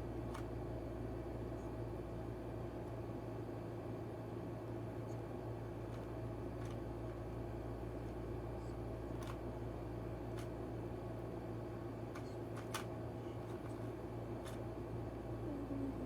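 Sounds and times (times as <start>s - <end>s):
steady low hum: 0.0s - 16.0s
puzzle cube clicks: 12.1s - 12.9s.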